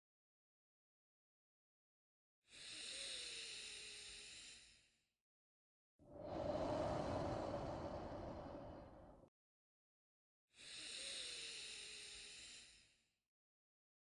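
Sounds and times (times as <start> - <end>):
deep breath close to microphone: 6.1 - 9.3.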